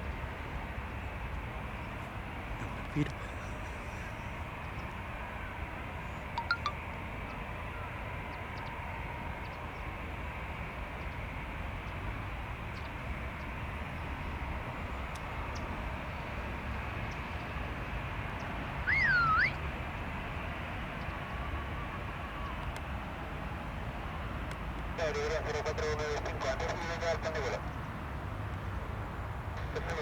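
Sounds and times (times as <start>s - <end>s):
whistled call: 6.4s - 6.8s, 18.8s - 19.6s.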